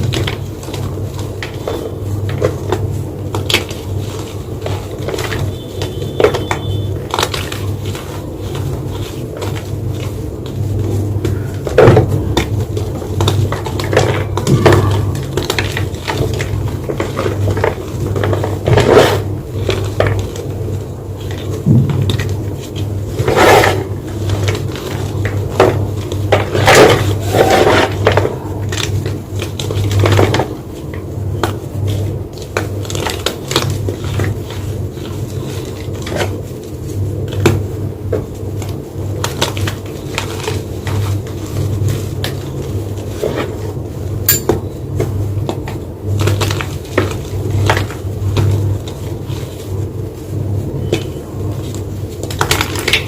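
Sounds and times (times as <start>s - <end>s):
steady low hum: 44.2s - 44.9s.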